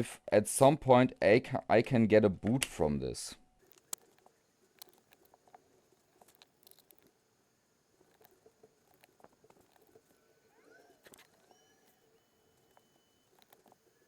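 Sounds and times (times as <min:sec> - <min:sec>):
small clicks and scratches of hardware: 0:03.6 - 0:14.0.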